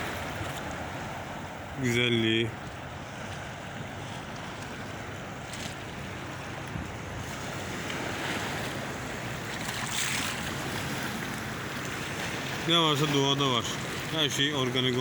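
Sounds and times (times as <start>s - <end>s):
sea waves washing ashore: 0.0s - 15.0s
wind rumbling on microphone: 2.5s - 12.7s.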